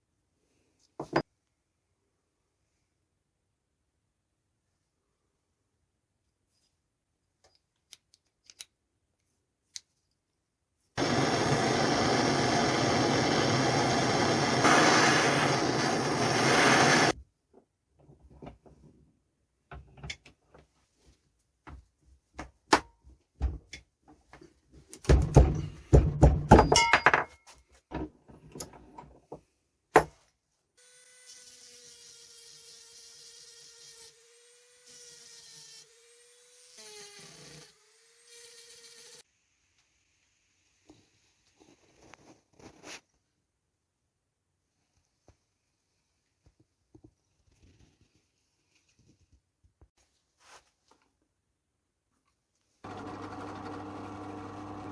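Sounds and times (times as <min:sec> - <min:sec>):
power tool running: 0:11.0 - 0:17.2, 0:52.8 - 0:54.9
faint motor hum: 0:52.9 - 0:54.9.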